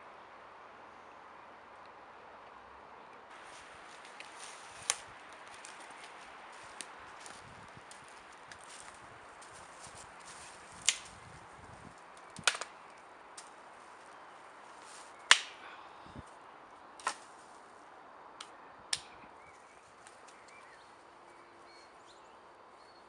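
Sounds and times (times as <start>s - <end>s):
dry sticks snapping: 3.9s - 14.2s, 14.8s - 15.8s, 17.0s - 17.4s, 18.4s - 19.2s.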